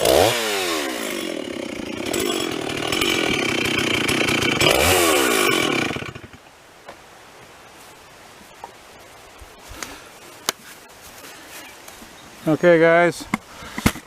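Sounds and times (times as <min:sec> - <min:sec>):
chainsaw revving and cutting: 0:00.0 - 0:06.4.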